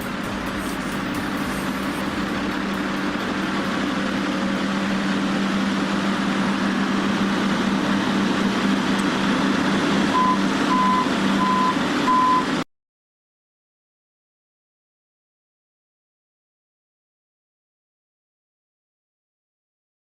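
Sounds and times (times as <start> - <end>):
heavy machine engine running: 0.0 - 12.6
backup alarm beeping: 10.1 - 12.5.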